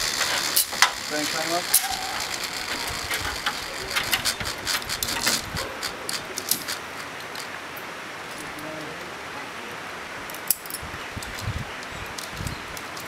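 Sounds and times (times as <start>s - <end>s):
metal gear clicking and clinking: 0.0s - 7.5s.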